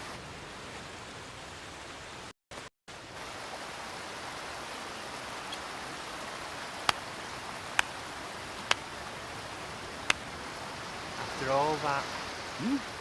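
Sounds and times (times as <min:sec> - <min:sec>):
river water rushing: 0:00.0 - 0:13.0.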